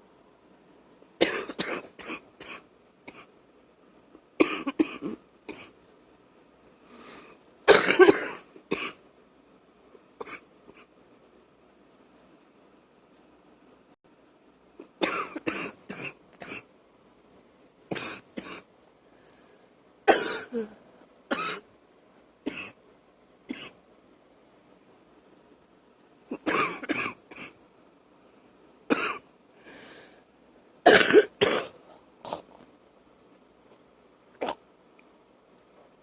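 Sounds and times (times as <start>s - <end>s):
woman coughing wetly: 1.2s - 3.3s, 4.4s - 5.7s, 7.7s - 9.0s, 15.0s - 16.6s, 20.1s - 21.6s, 26.3s - 27.5s, 28.9s - 29.2s, 30.8s - 31.8s.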